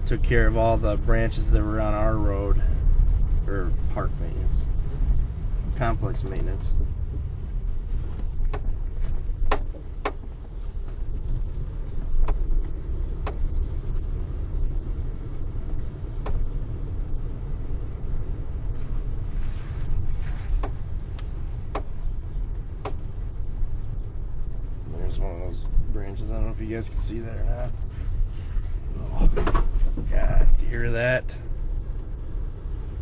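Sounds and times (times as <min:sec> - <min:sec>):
road and engine rumble: 0:00.0 - 0:33.0
sharp clicks and knocks: 0:08.2 - 0:11.0, 0:12.1 - 0:13.5, 0:16.2 - 0:16.5, 0:20.5 - 0:22.0, 0:22.8 - 0:23.1.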